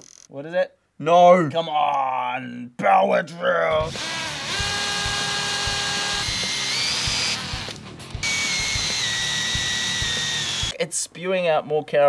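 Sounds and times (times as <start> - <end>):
power drill motor whine: 3.9 - 10.8.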